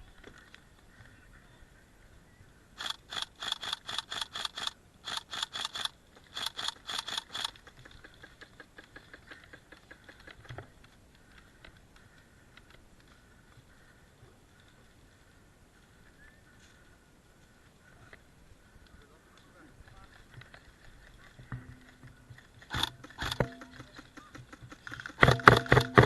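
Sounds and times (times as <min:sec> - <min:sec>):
airsoft gun shots: 0:24.9 - 0:26.0
distant airsoft gun shots: 0:25.0 - 0:26.0.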